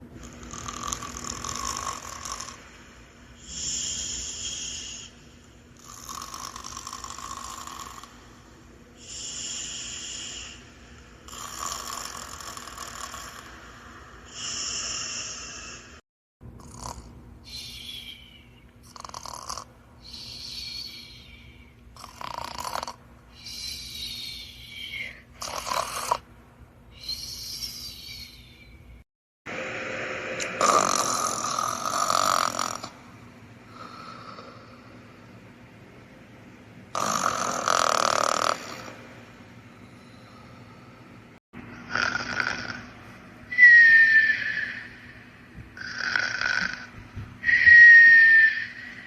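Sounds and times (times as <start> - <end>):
cartoon snoring: 0.1 - 2.8, 3.4 - 5.1, 5.8 - 8.3, 11.3 - 16.0, 16.6 - 17.8, 18.8 - 20.8, 22.0 - 26.2, 30.4 - 33.0, 36.9 - 39.0, 41.8 - 42.9, 45.8 - 46.9
whistling snore: 0.2 - 2.6, 3.4 - 5.2, 5.8 - 8.1, 9.0 - 10.6, 11.3 - 13.6, 14.3 - 16.0, 16.7 - 26.2, 27.0 - 28.8, 30.3 - 32.9, 37.0 - 39.0, 41.9 - 42.9, 43.5 - 45.2, 45.8 - 49.0.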